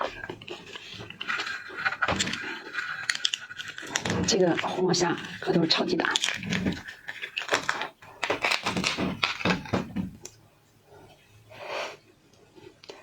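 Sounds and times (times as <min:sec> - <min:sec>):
shrimp shell cracking and snapping: 0:06.2 - 0:09.6.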